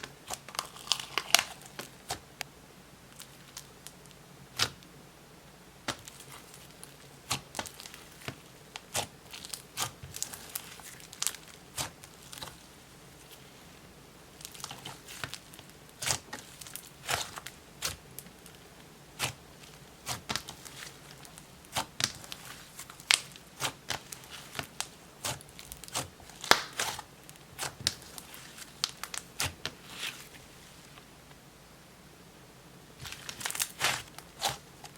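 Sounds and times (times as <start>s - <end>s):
slime crackling and popping: 0.0s - 2.2s, 5.8s - 12.7s, 14.4s - 18.6s, 19.2s - 30.3s, 33.0s - 34.9s.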